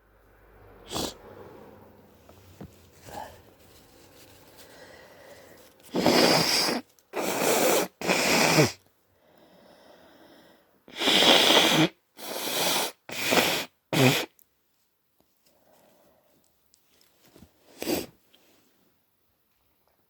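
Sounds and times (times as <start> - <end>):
person blowing nose hard: 0.8 - 1.4, 5.8 - 8.8, 10.9 - 14.4, 17.7 - 18.2
soft breath: 0.8 - 5.9, 9.1 - 10.9, 15.4 - 16.5.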